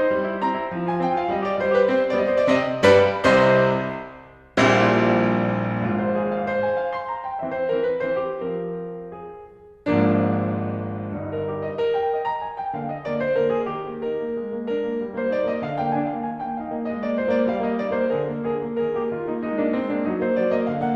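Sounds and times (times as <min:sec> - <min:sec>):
solo piano playing: 0:00.0 - 0:20.9.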